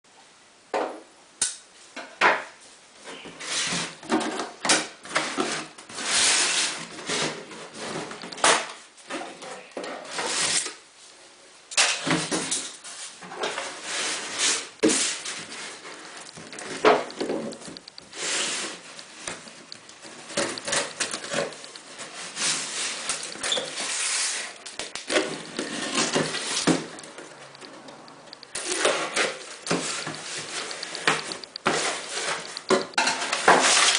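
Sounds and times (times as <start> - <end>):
short irregular clicks and knocks: 8.1 - 8.8, 14.8 - 18.1, 19.2 - 22.1, 24.6 - 33.7
packaging rustling: 12.6 - 33.9.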